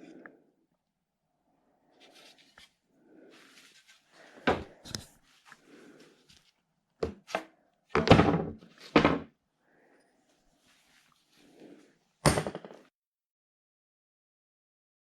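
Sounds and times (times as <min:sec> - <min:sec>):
wooden knocks and thunks: 0:08.0 - 0:09.3, 0:12.3 - 0:12.8.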